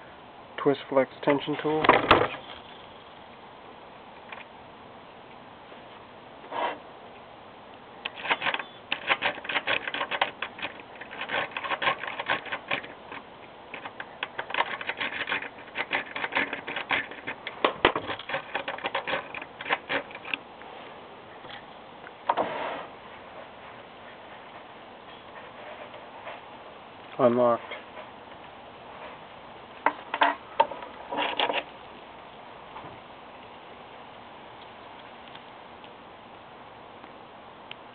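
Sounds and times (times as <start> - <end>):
short scrape: 6.5 - 6.9, 22.3 - 23.0
lock pick clicking and rattling: 8.1 - 20.4.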